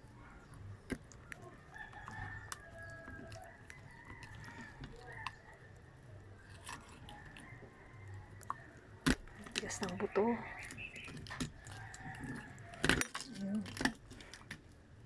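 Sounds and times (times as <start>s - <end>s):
rooster crowing: 1.4s - 5.5s, 11.6s - 13.0s.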